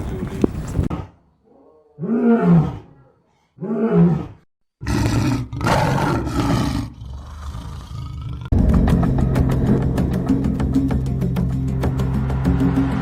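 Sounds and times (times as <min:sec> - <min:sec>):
big cat roaring: 0:00.9 - 0:08.5.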